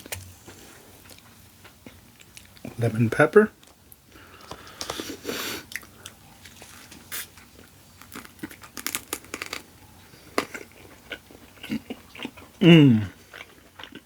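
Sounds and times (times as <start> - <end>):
crunchy chewing: 4.5 - 14.0.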